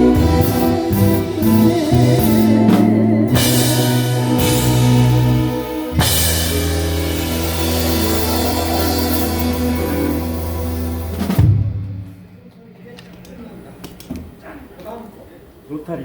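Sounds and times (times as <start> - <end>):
person singing: 0.0 - 11.2
live band playing: 0.0 - 12.5.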